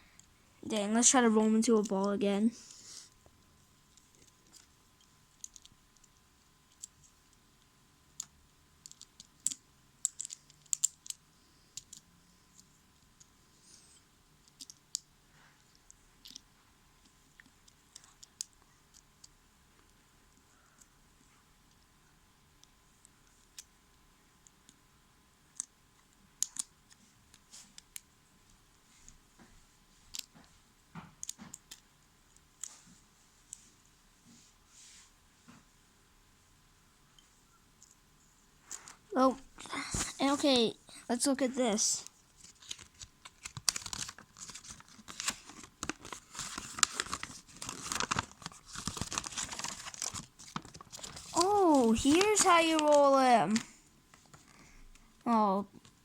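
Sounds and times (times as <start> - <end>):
small clicks and taps: 8.1 - 13.3, 13.9 - 21.9, 25.5 - 33.7
packaging crinkling: 42.4 - 53.6.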